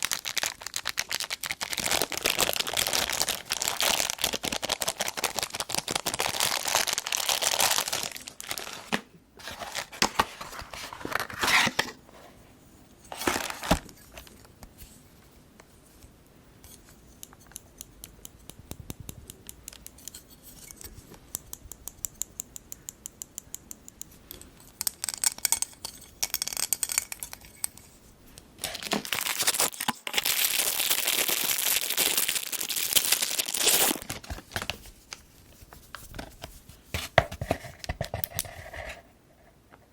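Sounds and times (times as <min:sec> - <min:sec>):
plastic and paper crinkling: 0:00.0 - 0:12.3, 0:13.1 - 0:15.0, 0:28.6 - 0:38.7.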